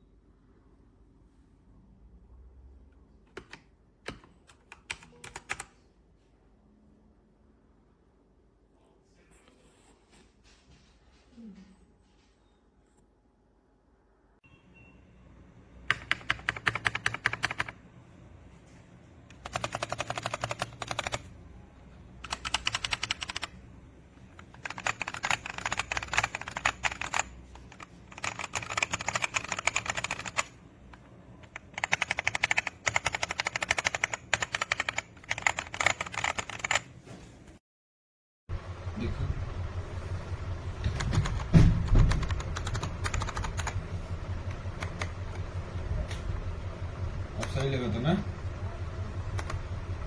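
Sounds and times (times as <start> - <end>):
mechanical keyboard key clacks: 15.9 - 17.8, 19.3 - 21.2, 22.2 - 23.5, 24.4 - 30.5, 31.4 - 36.8, 40.9 - 43.8.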